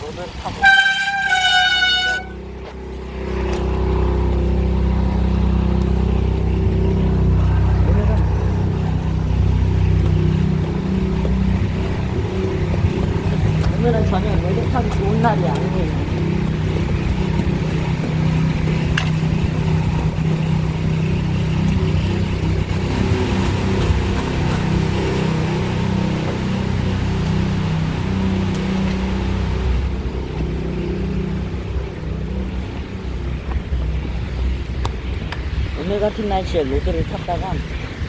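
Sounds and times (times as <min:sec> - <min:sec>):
bike tyres on snowy road: 0:00.0 - 0:38.0
vehicle engine humming: 0:00.0 - 0:38.0
car horn: 0:00.5 - 0:02.5
wind on microphone: 0:03.0 - 0:38.0.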